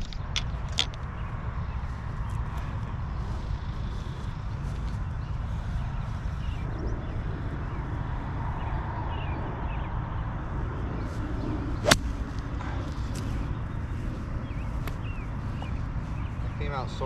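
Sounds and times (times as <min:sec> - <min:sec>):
low wind rumble on microphone: 0:00.0 - 0:17.0
golf club striking ball: 0:11.8 - 0:12.5.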